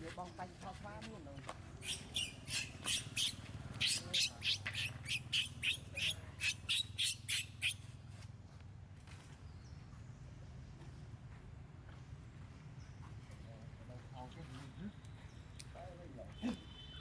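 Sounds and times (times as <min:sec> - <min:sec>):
monkey shrill calls: 0:01.8 - 0:07.9.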